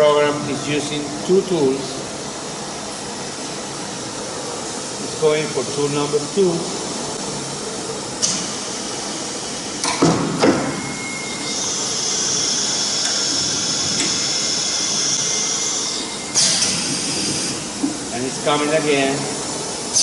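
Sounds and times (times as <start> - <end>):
compressed air hiss: 11.6 - 17.8.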